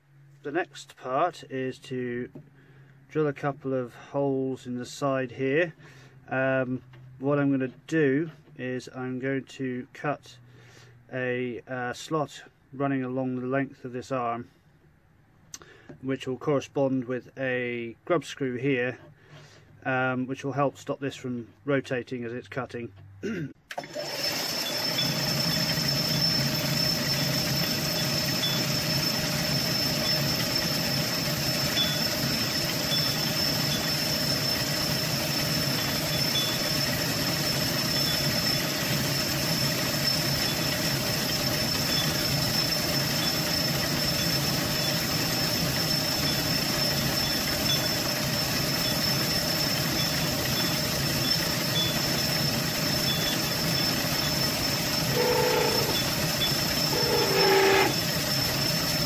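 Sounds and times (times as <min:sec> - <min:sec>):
metal lathe humming with whine: 0:23.8 - 0:59.0.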